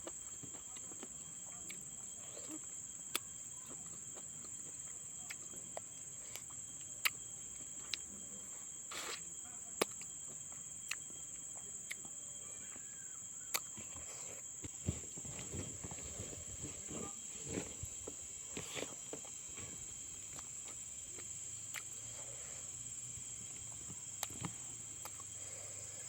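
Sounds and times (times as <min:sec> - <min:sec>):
crickets chirring: 0:00.0 - 0:26.0
eating clicks and smacks: 0:09.8 - 0:10.1, 0:13.5 - 0:13.8.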